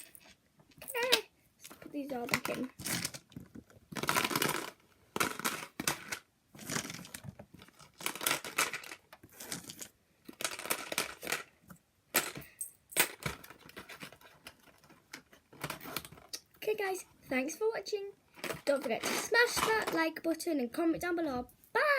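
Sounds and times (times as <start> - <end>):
toy figures clattering: 0.0 - 16.5, 18.3 - 20.3.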